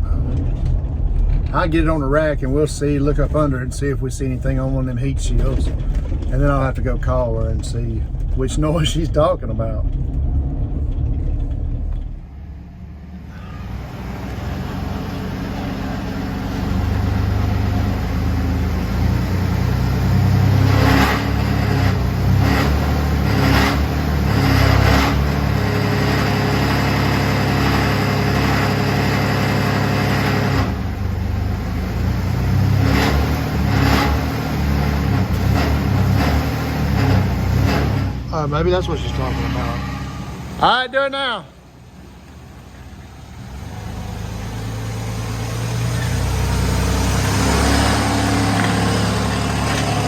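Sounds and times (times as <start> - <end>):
car engine running: 0.0 - 50.0
rattling knocks: 5.4 - 8.4.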